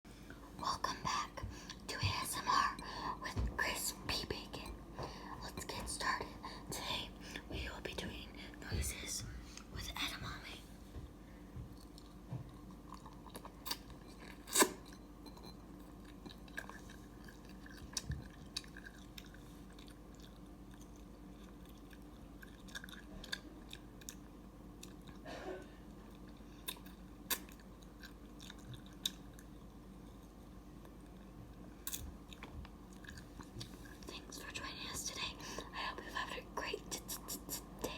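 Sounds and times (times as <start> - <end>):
chewing with soft crunches: 10.9 - 34.4.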